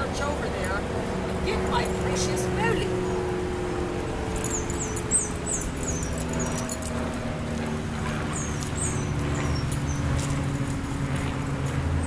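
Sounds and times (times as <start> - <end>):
steady low hum: 0.0 - 12.0
small bird chirping: 4.4 - 6.8.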